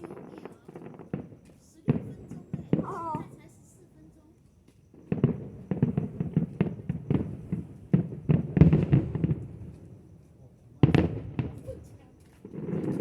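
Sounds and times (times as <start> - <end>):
fireworks bangs: 0.0 - 3.8, 4.9 - 13.0
fireworks pops and crackles: 0.0 - 13.0.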